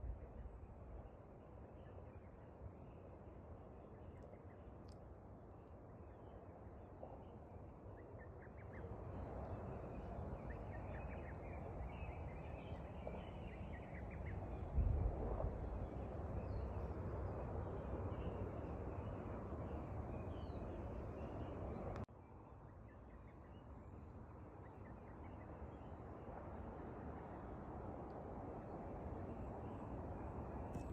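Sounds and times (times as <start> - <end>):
wind rushing over microphone: 13.4 - 22.0.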